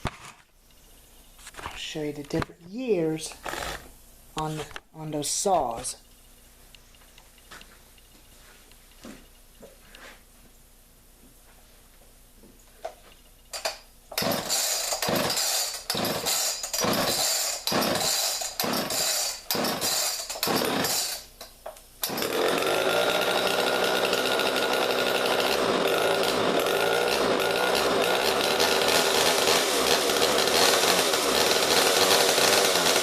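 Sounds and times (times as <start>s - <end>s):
chainsaw engine running: 3.3s - 3.9s, 14.1s - 21.3s, 22.0s - 33.0s
chainsaw starter cord yanks: 3.4s - 3.9s, 13.6s - 33.0s.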